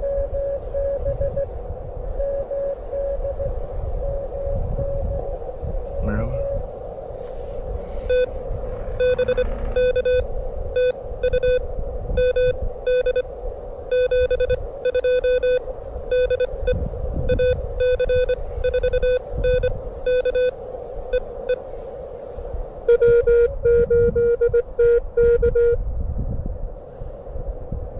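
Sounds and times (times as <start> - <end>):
morse code beeps: 0.0 - 1.5, 8.1 - 8.4, 9.0 - 11.6, 12.2 - 13.2, 13.9 - 21.6, 22.9 - 25.8
wind rumbling on microphone: 0.0 - 27.9.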